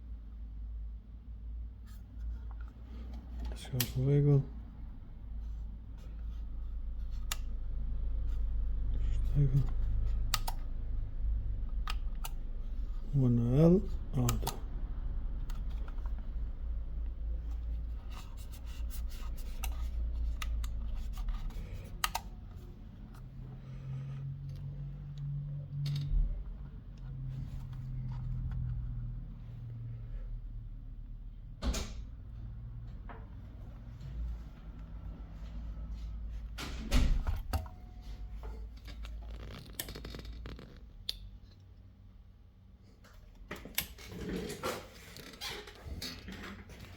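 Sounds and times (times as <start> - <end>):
handling clicks and scrapes: 17.3 - 24.7.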